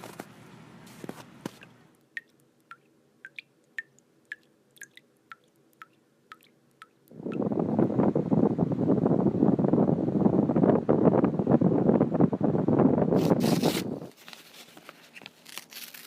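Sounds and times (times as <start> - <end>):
water dripping: 1.6 - 7.5.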